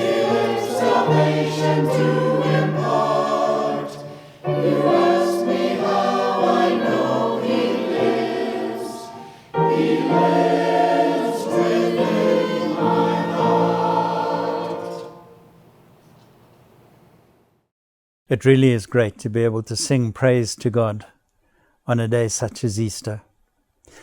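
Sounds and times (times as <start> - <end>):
church choir singing a hymn: 0.0 - 15.6.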